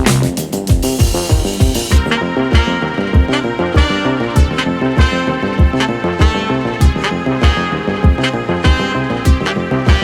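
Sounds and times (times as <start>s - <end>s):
crisp high percussion: 0.0s - 10.0s
electronic music: 0.0s - 10.0s
kick drum beat: 0.0s - 10.0s
stepping bass line: 0.0s - 10.0s.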